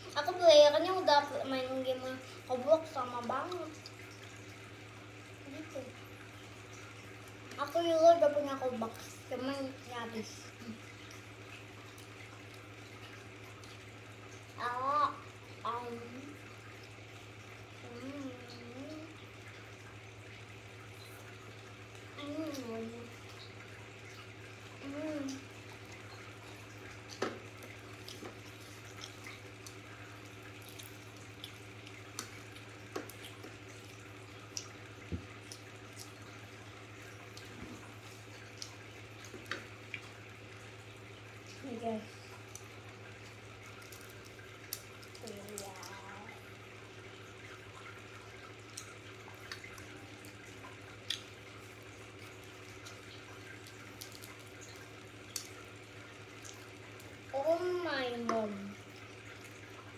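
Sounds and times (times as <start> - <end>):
faint background hum: 0.0 - 59.9.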